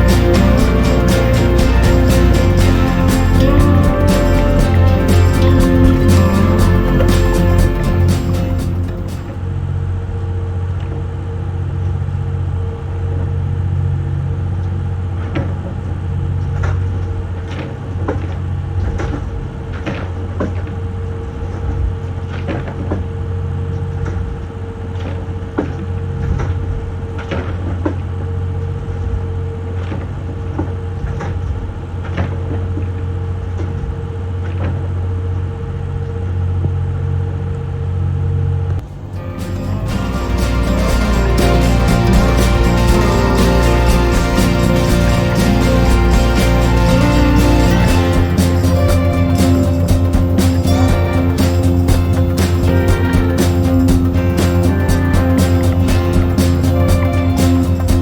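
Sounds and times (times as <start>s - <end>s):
boat engines droning: 0.0s - 9.4s, 38.8s - 58.0s.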